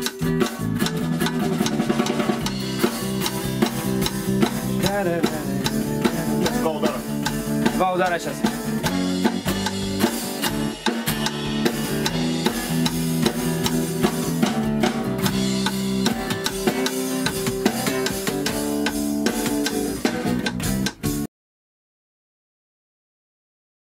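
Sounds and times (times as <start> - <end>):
band playing a song: 0.0 - 21.3.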